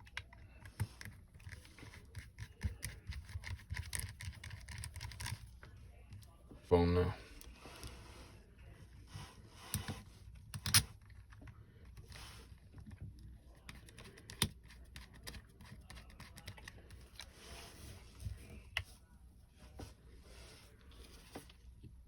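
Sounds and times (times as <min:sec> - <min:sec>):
screwdriver clicks and taps: 0:10.5 - 0:11.4.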